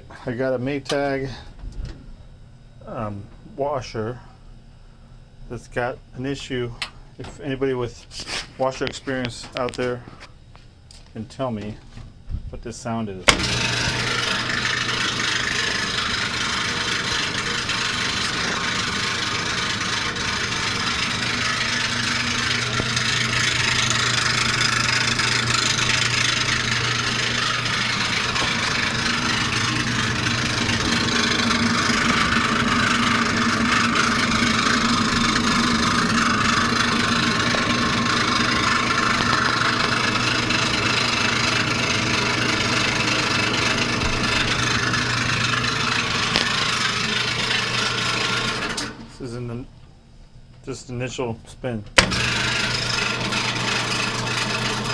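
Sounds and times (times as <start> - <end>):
steady low hum: 0.0 - 54.9
washing machine drum spinning: 13.2 - 49.2, 51.9 - 54.9.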